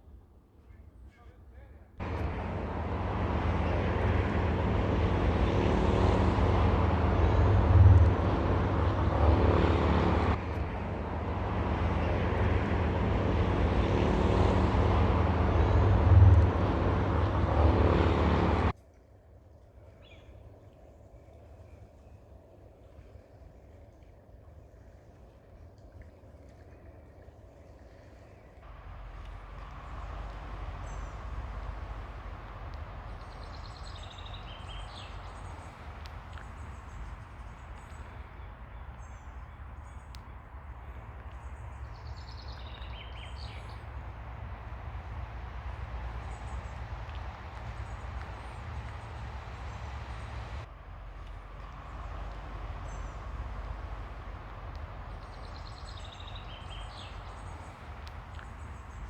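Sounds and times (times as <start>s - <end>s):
ocean surf rumbling: 2.0s - 18.7s, 28.7s - 59.0s
bird chirping: 33.1s - 44.0s, 55.1s - 59.0s.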